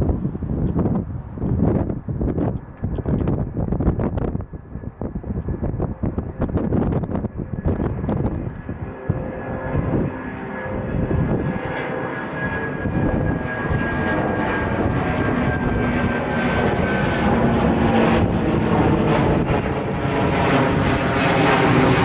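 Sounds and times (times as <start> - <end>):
jet airliner engines at takeoff: 0.0 - 22.0
wind buffeting microphone: 0.0 - 22.0.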